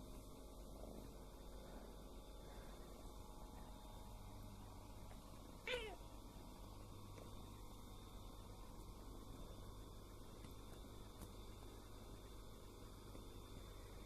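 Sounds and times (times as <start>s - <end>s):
faint low hum: 0.0s - 14.0s
cat meowing: 5.7s - 6.0s.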